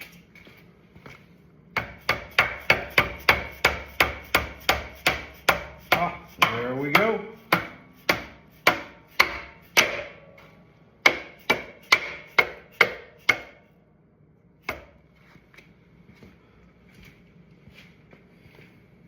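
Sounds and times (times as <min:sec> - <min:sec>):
hammer tapping metal: 0:01.8 - 0:10.4, 0:11.0 - 0:13.6.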